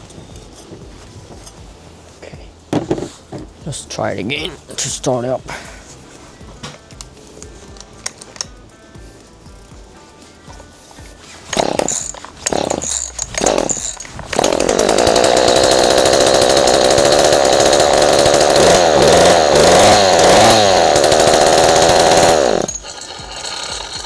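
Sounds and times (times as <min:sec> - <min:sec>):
chainsaw pull cord: 0:11.2 - 0:24.0
chainsaw engine revving: 0:11.4 - 0:24.0.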